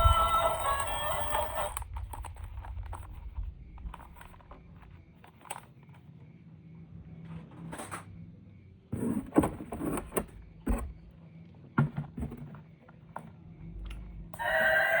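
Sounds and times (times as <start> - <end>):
faint low hum: 0.0 - 15.0
plastic clicks and rustles: 1.3 - 6.1.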